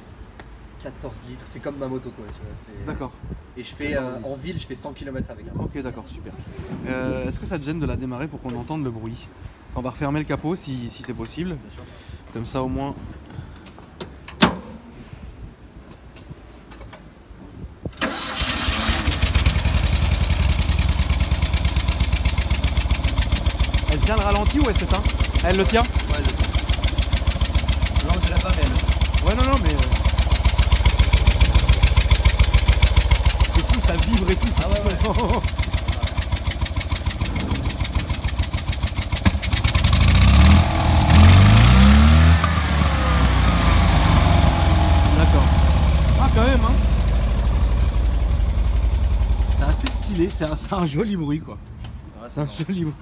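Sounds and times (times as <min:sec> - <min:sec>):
car engine starting and idling: 0:18.0 - 0:51.4.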